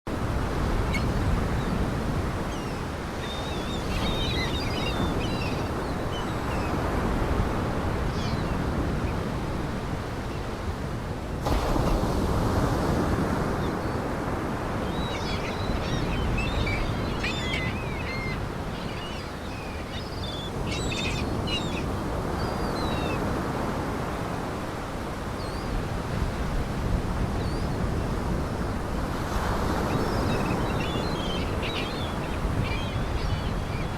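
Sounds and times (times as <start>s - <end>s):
waves washing ashore: 0.1s - 33.9s
small birds chirping: 14.9s - 23.2s, 29.9s - 33.9s.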